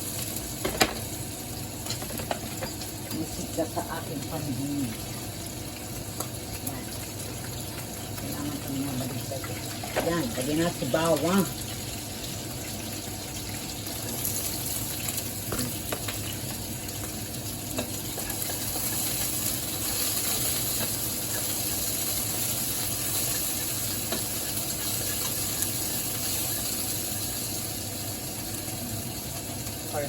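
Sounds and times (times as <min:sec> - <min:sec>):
garlic sizzling in hot fat: 0:00.0 - 0:30.0
spatula tapping a pan: 0:15.4 - 0:21.6, 0:22.9 - 0:27.2.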